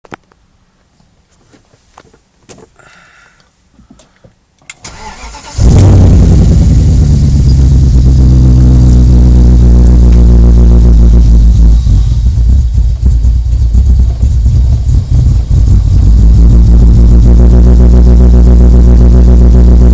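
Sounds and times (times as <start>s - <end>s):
car engine idling loudly: 5.6s - 19.9s.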